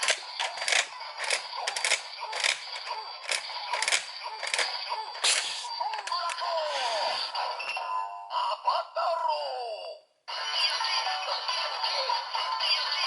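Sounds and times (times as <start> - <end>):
gliding voice-like tones: 5.3 - 7.5.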